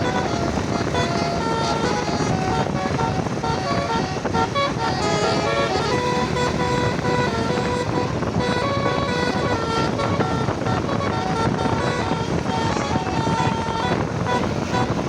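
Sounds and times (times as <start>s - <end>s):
musical bus horn playing a tune: 0.0s - 15.0s
rumble of engines and traffic: 0.0s - 15.0s.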